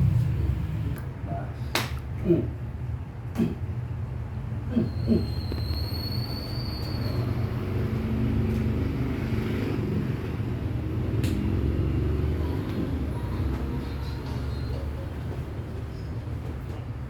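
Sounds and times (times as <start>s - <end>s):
engine running low rumble: 0.0s - 17.0s.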